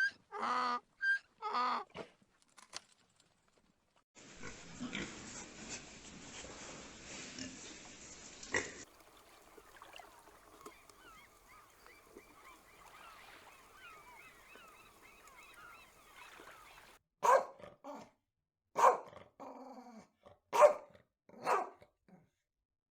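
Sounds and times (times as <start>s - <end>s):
faint high chirps: 8.9s - 17.0s.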